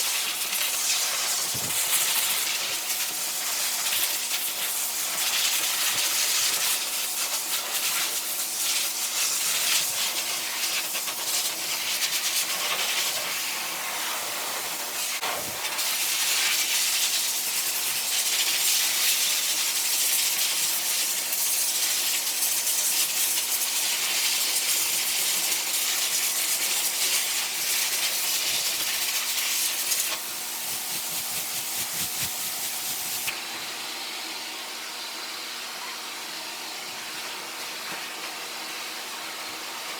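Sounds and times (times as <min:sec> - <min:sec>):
blow dryer blowing air: 0:00.0 - 0:03.7, 0:24.8 - 0:39.9.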